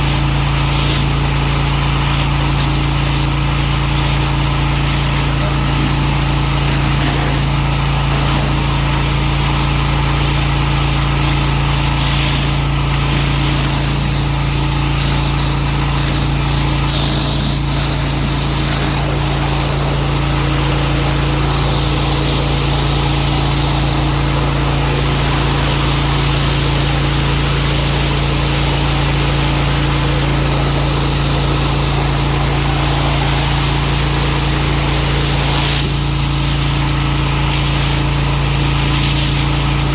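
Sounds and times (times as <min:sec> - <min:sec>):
pressure washer motor: 0:00.0 - 0:39.9
water jet hissing: 0:00.0 - 0:39.9.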